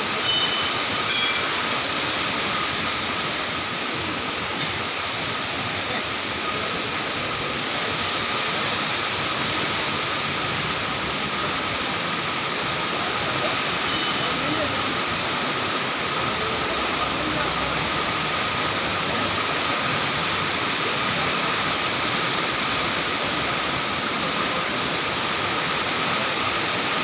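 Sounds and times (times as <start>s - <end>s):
heavy rain pouring: 0.0s - 27.0s
short high-pitched tones: 0.2s - 1.6s.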